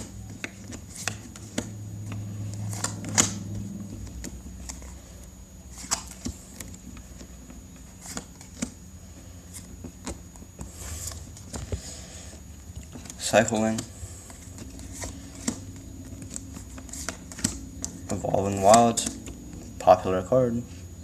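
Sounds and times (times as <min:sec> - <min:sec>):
cards clicking and slapping: 0:00.0 - 0:05.0, 0:05.7 - 0:08.8, 0:12.8 - 0:19.7
low hum: 0:00.0 - 0:21.0.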